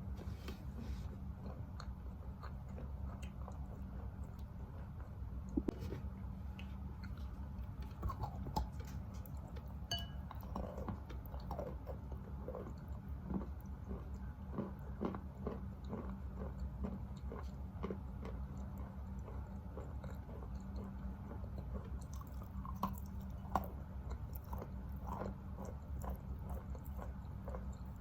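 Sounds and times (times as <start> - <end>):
chewing chalk: 1.1 - 5.7, 6.5 - 28.0.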